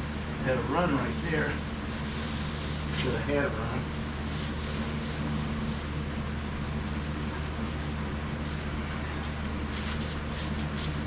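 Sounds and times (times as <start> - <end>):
steady low hum: 0.0 - 11.0
sandpaper rubbing on car panel: 1.0 - 3.2, 3.8 - 6.2.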